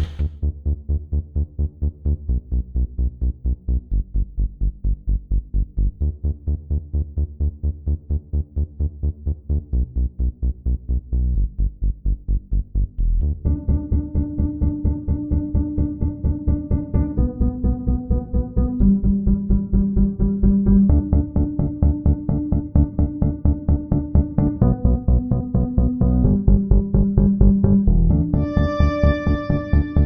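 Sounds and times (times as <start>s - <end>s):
electronic dance music: 28.4s - 30.0s.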